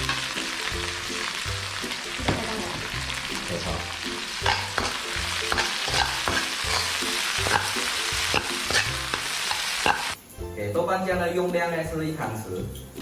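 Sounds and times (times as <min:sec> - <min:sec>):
aromatics sizzling in hot oil: 0:00.0 - 0:10.3.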